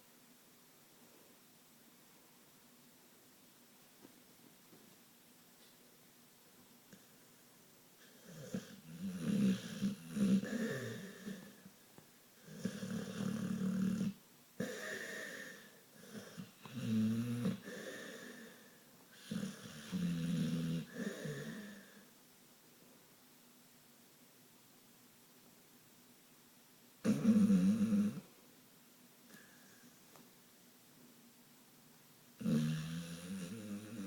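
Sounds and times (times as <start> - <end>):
dog snoring: 8.0 - 11.7, 12.4 - 22.0, 27.0 - 28.3, 32.4 - 34.0.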